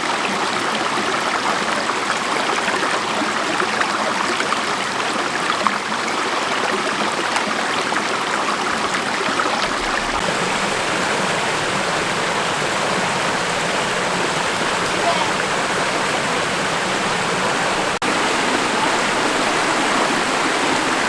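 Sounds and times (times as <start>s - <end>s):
waterfall rushing: 9.4s - 21.0s.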